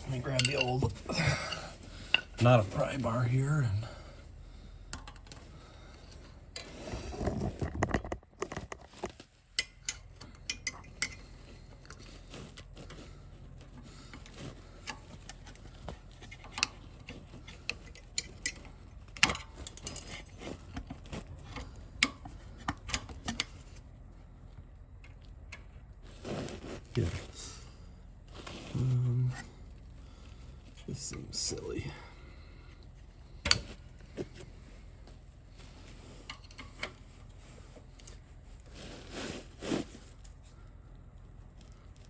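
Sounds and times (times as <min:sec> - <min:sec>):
metallic clinks of hand tools: 0:00.1 - 0:02.4
rustling scrape: 0:05.4 - 0:09.5, 0:11.2 - 0:22.7, 0:26.0 - 0:30.8, 0:32.3 - 0:42.0.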